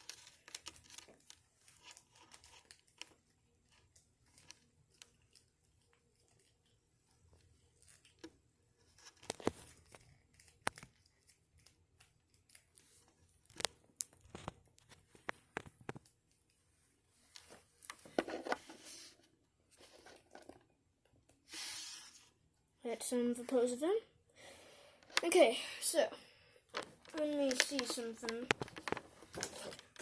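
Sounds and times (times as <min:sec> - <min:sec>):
handling rustle: 0:26.7 - 0:30.0.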